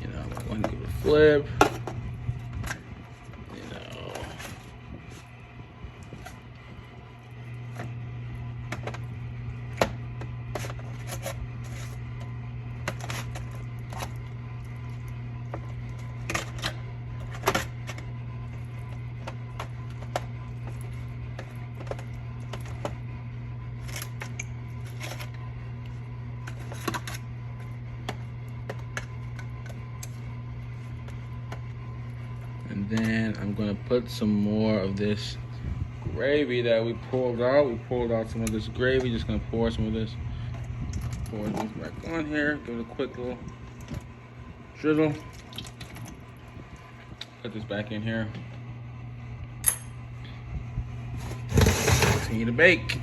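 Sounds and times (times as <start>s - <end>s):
steady low hum: 0.0s - 53.0s.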